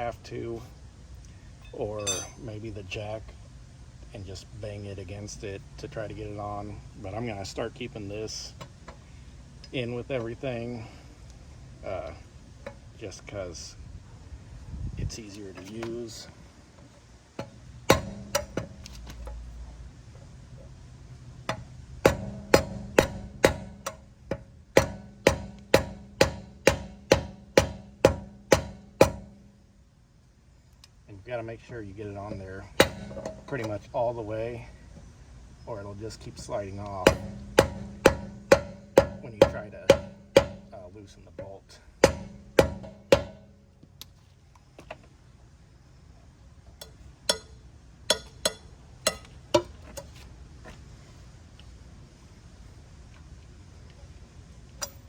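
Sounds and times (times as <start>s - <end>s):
wrench clanking on lug nuts: 1.7s - 2.4s, 17.4s - 19.4s, 32.3s - 33.8s, 37.0s - 40.7s, 41.4s - 43.5s, 46.8s - 50.1s
wrench striking metal nut: 2.0s - 2.5s, 17.4s - 19.4s, 21.5s - 29.4s, 32.8s - 33.8s, 37.1s - 40.7s, 46.8s - 50.1s, 54.8s - 55.0s.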